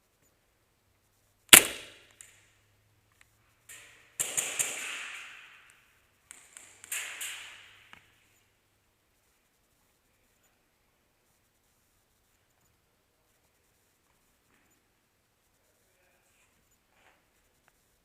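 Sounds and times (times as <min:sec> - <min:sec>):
airsoft gunshots: 0:01.5 - 0:02.1, 0:04.2 - 0:05.6.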